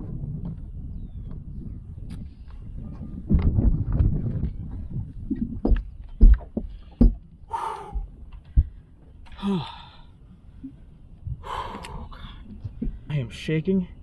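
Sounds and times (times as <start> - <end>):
sharp knocks and thumps: 5.4 - 7.2
man breathing hard and gasping: 7.5 - 8.1, 9.3 - 10.2, 11.4 - 12.6.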